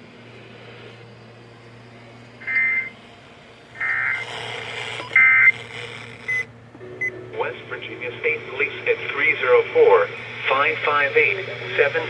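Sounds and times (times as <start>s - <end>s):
low steady hum: 0.0s - 12.0s
two-tone digital data bursts: 2.4s - 3.0s, 3.8s - 6.5s.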